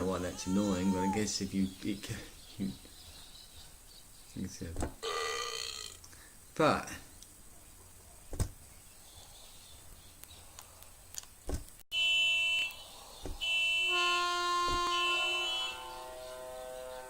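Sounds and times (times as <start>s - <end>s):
electronic buzzer and horn tones: 11.9s - 17.0s.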